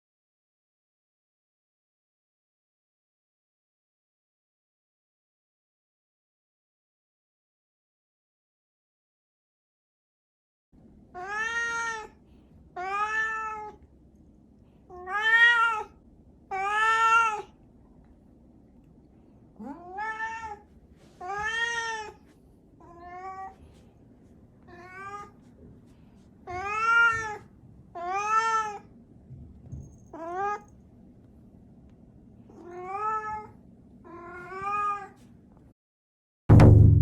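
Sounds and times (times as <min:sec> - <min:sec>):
cat meowing: 0:11.2 - 0:12.2, 0:12.8 - 0:13.8, 0:14.9 - 0:17.6, 0:19.6 - 0:22.2, 0:24.7 - 0:25.5, 0:26.4 - 0:28.9, 0:30.1 - 0:30.7, 0:32.5 - 0:35.2
loud low tone: 0:36.5 - 0:37.0.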